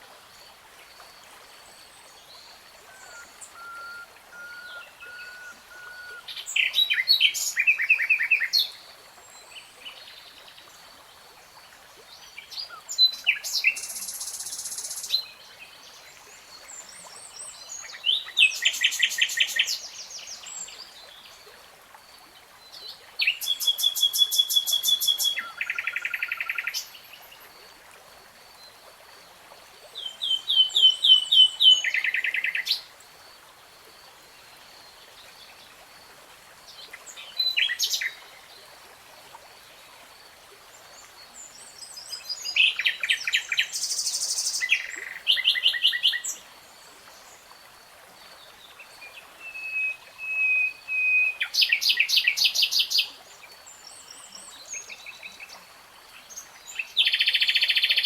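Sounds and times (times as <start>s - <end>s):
songbird singing trills: 2.9s - 8.5s, 23.2s - 26.9s.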